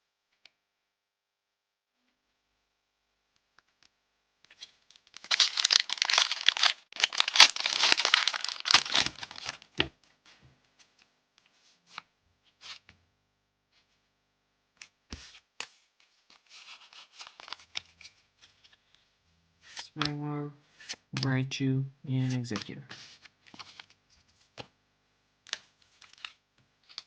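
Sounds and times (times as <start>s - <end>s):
soft crinkling: 4.5s - 12.9s, 15.2s - 21.0s
foil wrapper ripping: 5.1s - 9.7s, 16.8s - 17.8s.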